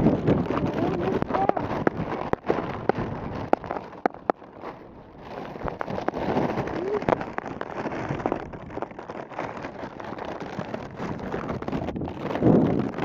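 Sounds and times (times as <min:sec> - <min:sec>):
crackling and rustling: 0:00.0 - 0:13.0
wind buffeting microphone: 0:00.0 - 0:13.0.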